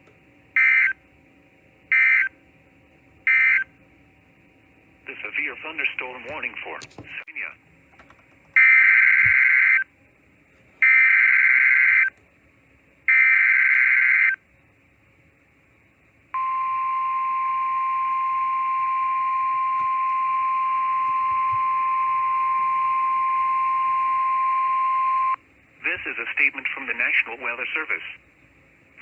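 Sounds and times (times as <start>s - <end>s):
steady warning alarm tone: 0.5s - 1.0s, 1.9s - 2.4s, 3.2s - 3.7s, 8.6s - 9.9s, 10.8s - 12.2s, 13.1s - 14.4s, 16.4s - 25.4s
screeching data tones: 0.6s - 1.0s, 1.9s - 2.3s, 3.3s - 3.7s, 10.8s - 12.2s, 13.1s - 14.4s.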